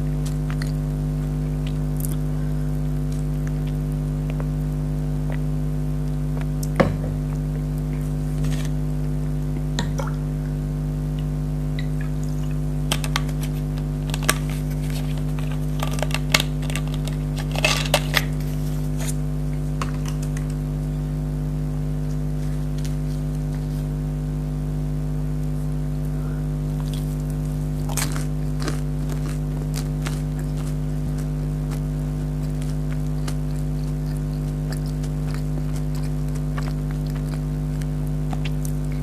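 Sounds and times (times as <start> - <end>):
crunching fried food: 0.0 - 8.9, 12.5 - 20.8, 26.7 - 39.0
low electrical hum: 0.0 - 39.0
wet chewing clicks: 3.1 - 5.5, 26.8 - 39.0.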